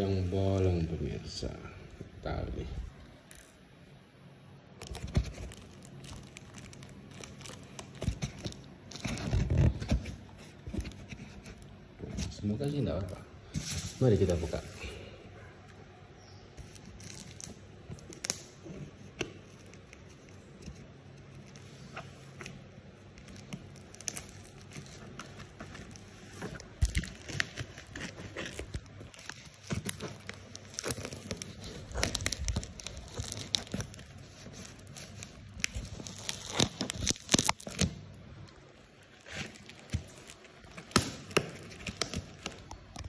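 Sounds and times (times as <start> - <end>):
cardboard packaging tearing: 4.8 - 11.6, 23.2 - 38.2, 38.8 - 43.0.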